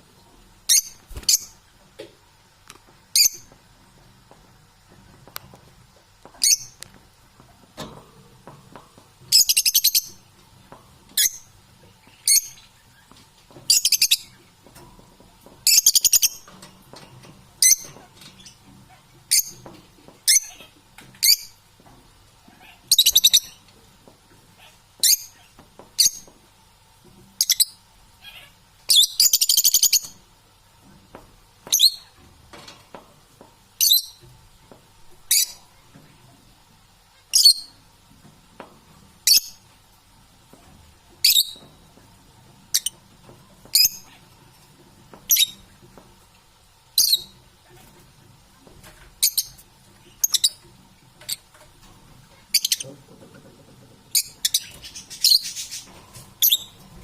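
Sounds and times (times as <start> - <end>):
parrot chirping: 0.7 - 1.6, 3.2 - 3.5, 6.4 - 6.8, 9.3 - 10.2, 11.2 - 11.5, 13.7 - 14.4, 15.7 - 16.5, 17.6 - 19.7, 22.5 - 23.6, 27.4 - 30.2, 31.7 - 32.2, 35.3 - 35.6, 37.3 - 37.8, 39.3 - 39.6, 41.2 - 41.7, 42.7 - 43.0, 43.7 - 44.2, 45.3 - 45.6, 47.0 - 47.4, 49.2 - 49.6, 50.2 - 50.6, 52.4 - 52.8, 54.1 - 56.8.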